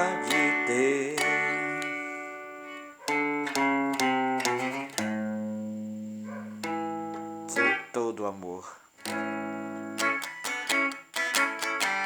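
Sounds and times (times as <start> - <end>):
instrumental guitar music: 0.0 - 12.0.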